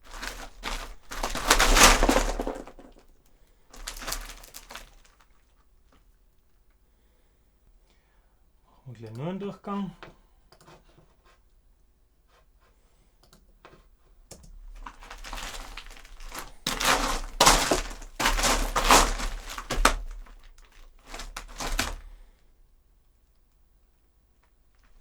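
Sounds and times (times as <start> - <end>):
footsteps crunching on gravel: 0.0 - 3.0, 3.8 - 5.1, 14.8 - 22.1.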